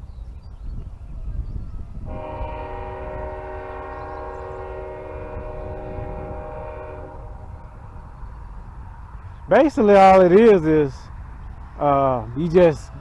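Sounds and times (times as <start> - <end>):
low rumble: 0.3 - 9.5
train horn blast: 2.0 - 7.8.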